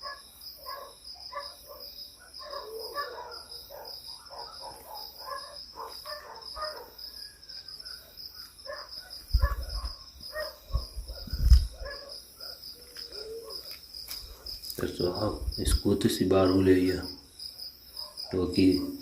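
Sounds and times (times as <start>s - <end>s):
distant dogs barking and yelping: 0.0s - 15.2s, 17.5s - 19.0s
crickets chirping: 0.0s - 19.0s.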